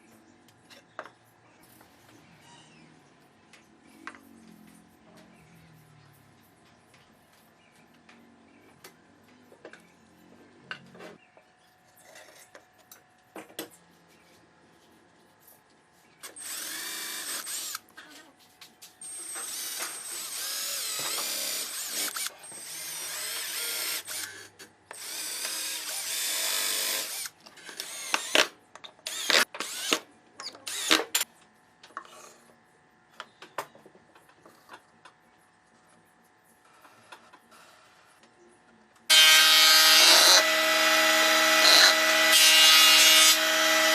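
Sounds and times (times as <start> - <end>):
power tool whining: 16.2 - 17.8, 19.0 - 28.5, 39.1 - 43.9.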